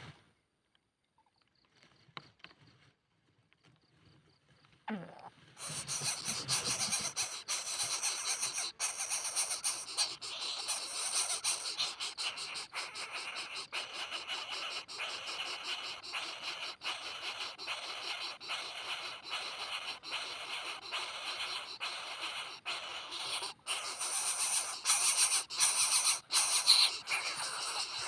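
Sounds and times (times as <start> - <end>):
nestlings hissing: 5.6 - 28.0.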